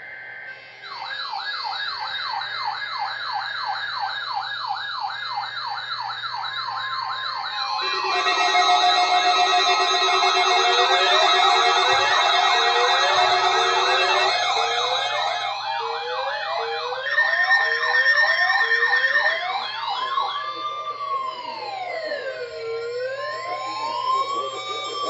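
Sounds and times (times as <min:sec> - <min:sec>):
electronic sirens whooping and wailing: 0:00.1 - 0:25.0.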